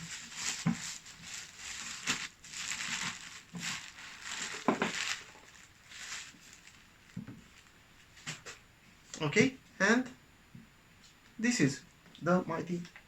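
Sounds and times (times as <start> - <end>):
packaging crinkling: 0.0 - 7.7.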